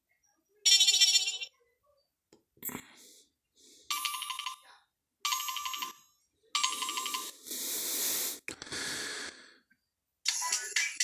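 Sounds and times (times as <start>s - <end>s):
electronic ringtone: 0.7s - 1.5s, 3.9s - 4.6s, 5.3s - 7.4s.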